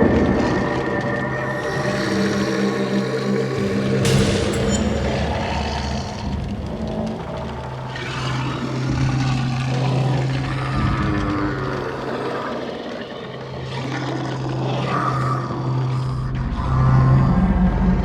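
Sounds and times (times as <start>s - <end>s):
rumbling noise: 0.0s - 12.2s
steady low drone: 0.0s - 13.7s.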